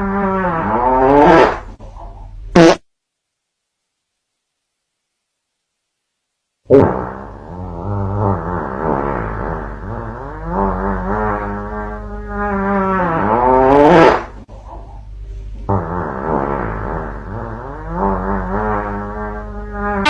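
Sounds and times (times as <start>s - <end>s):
long fart: 0.0s - 1.8s, 2.5s - 2.9s, 6.7s - 14.4s, 15.7s - 20.0s.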